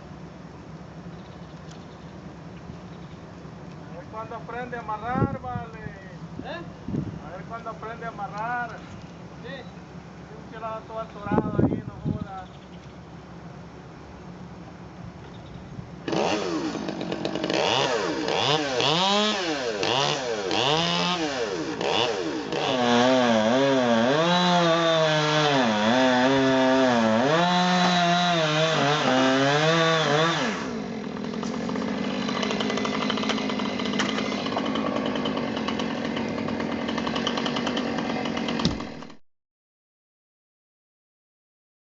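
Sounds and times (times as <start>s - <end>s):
chainsaw revving: 16.0s - 39.2s.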